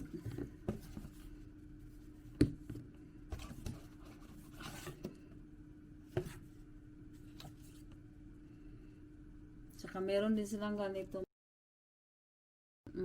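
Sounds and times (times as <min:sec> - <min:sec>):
faint steady hum: 0:00.0 - 0:11.3.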